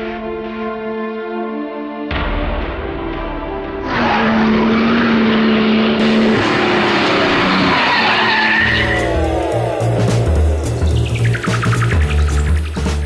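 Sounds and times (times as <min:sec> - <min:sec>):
car engine: 0:03.8 - 0:13.0
tyre squeal: 0:07.1 - 0:09.2
music with bass notes: 0:08.6 - 0:13.0.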